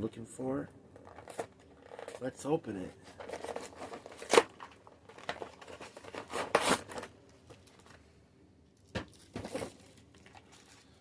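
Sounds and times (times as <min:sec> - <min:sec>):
packaging crinkling: 0:03.1 - 0:08.0, 0:09.1 - 0:11.0
cardboard box tearing: 0:05.7 - 0:07.1.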